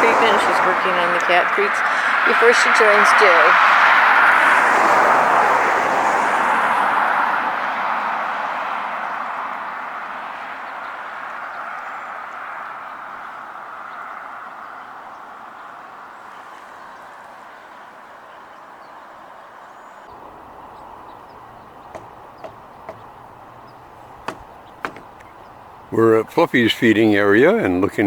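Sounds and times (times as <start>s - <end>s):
passing vehicle road noise: 0.0s - 18.4s, 19.0s - 27.7s.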